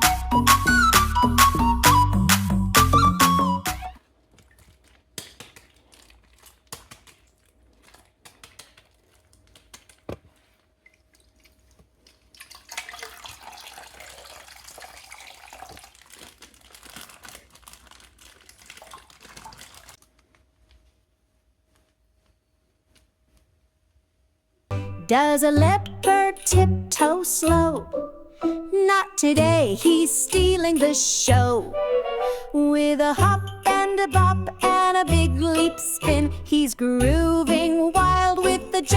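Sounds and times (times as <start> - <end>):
water splashing and running: 5.4 - 20.0
water dripping: 10.8 - 16.4, 18.4 - 20.0.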